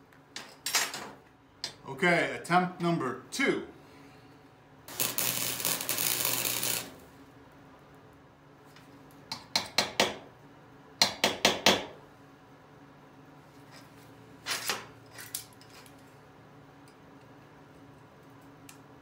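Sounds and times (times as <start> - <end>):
arc welding crackles: 4.9 - 7.3.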